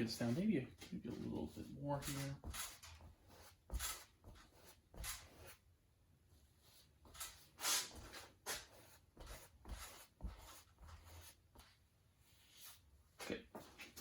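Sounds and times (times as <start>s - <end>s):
paintbrush swishing on canvas: 6.6s - 12.9s.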